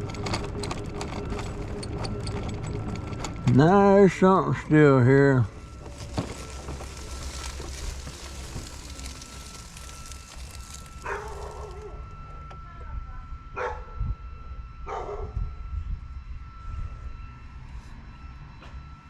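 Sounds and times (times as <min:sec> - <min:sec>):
dog barking: 0:11.0 - 0:12.0, 0:13.6 - 0:13.9, 0:14.9 - 0:15.3.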